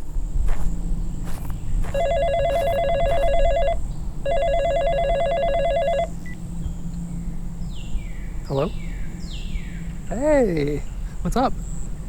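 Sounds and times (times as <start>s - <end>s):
telephone ringing electronic trill: 1.9s - 6.1s.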